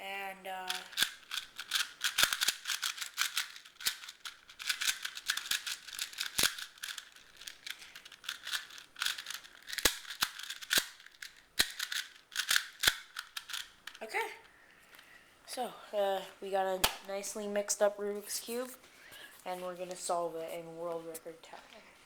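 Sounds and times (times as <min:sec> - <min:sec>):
puzzle cube clicking and rattling: 0:00.6 - 0:14.0.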